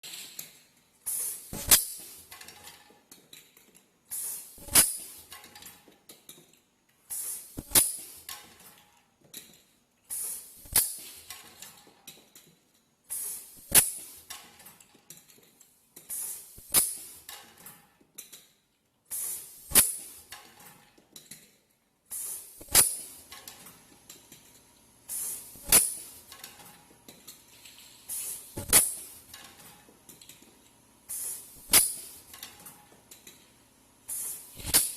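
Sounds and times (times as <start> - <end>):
welding machine hiss: 1.0 - 2.3, 4.1 - 5.4, 7.1 - 8.3, 10.1 - 11.4, 13.1 - 14.3, 16.1 - 17.3, 19.1 - 20.3, 22.1 - 23.4, 25.0 - 26.4, 27.6 - 29.4, 31.0 - 32.4, 34.0 - 34.9
welding machine click: 7.1 - 8.6, 22.2 - 24.4, 25.1 - 26.8, 28.1 - 30.4, 31.1 - 33.4.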